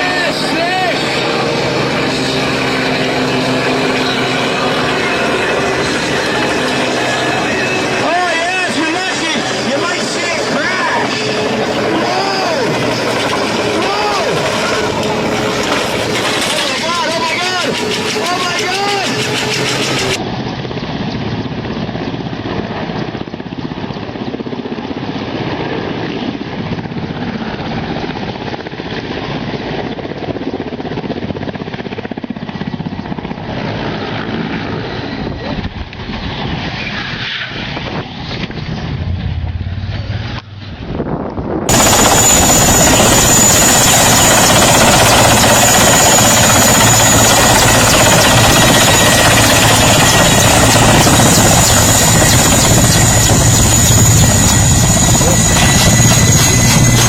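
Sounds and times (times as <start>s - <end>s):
helicopter rotor and engine: 0.0s - 57.0s
high whine: 37.5s - 57.0s.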